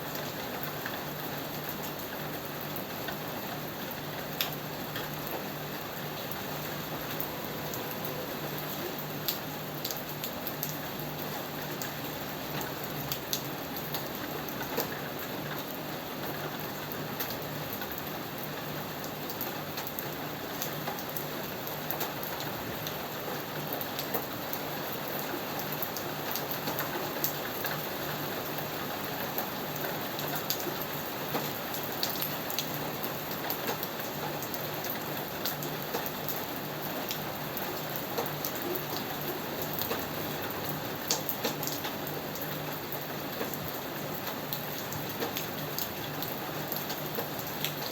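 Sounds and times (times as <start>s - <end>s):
rain falling on a surface: 0.0s - 47.9s.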